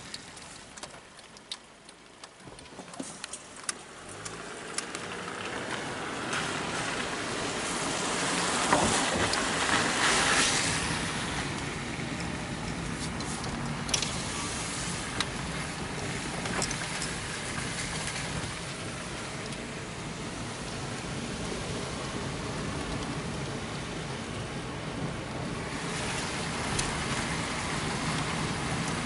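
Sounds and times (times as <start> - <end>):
sharp ticks on car: 0.0 - 5.9, 11.5 - 14.2
car driving on wet road: 0.0 - 29.0.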